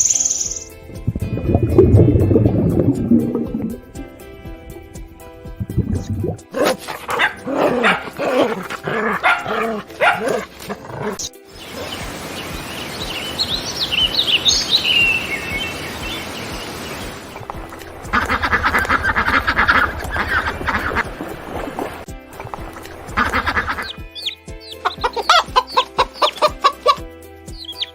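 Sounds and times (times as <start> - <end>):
high chirping: 0.0 - 4.0, 5.7 - 17.4, 23.0 - 27.0, 27.6 - 27.9
pitched animal calls: 5.7 - 12.2, 18.0 - 27.0
rapid buzzy calls: 6.5 - 27.0.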